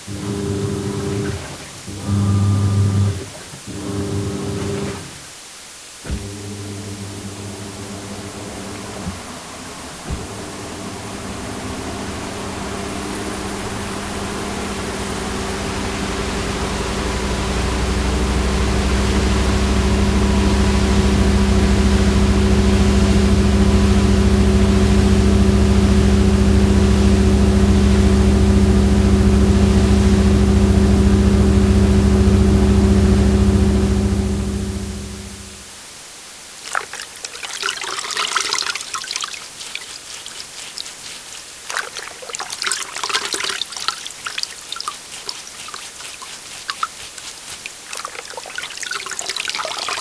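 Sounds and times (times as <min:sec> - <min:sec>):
electric appliance motor humming: 0:00.0 - 0:05.0, 0:06.1 - 0:35.6.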